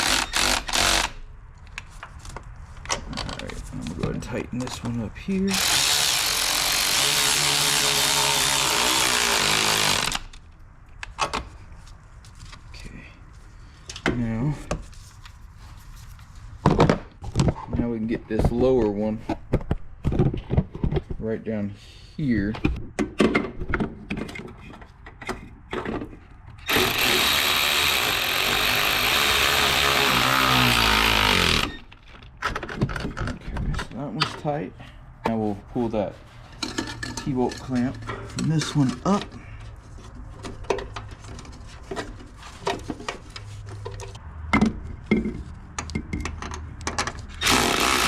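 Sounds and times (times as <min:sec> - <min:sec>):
cordless power tool motor whine: 0:05.6 - 0:10.3, 0:26.7 - 0:31.8, 0:47.4 - 0:48.0.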